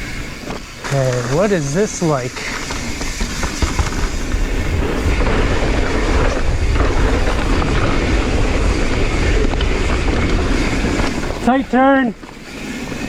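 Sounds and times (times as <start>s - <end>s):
bike rattling over rough ground: 0.0s - 13.0s
bike tyre noise: 0.0s - 13.0s
wind rumble on microphone: 2.6s - 13.0s.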